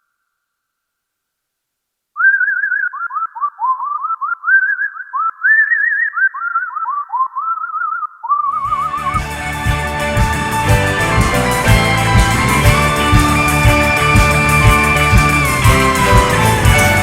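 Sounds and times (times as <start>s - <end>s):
synthesizer whistle melody: 2.2s - 17.0s
guitar music: 8.6s - 17.0s.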